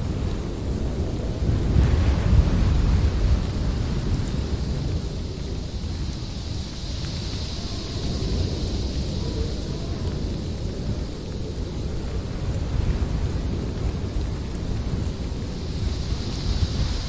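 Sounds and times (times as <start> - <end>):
blizzard wind rumbling: 0.0 - 17.0
faint whistling howl: 7.4 - 10.8.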